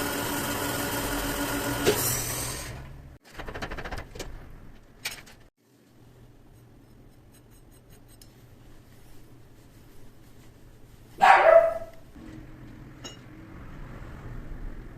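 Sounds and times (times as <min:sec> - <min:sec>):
dog barking: 0:11.2 - 0:12.0.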